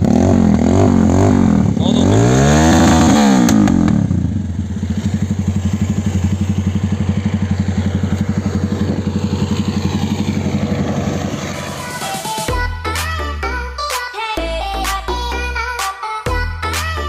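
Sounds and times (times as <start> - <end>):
motorcycle engine revving and idling: 0.0 - 12.6.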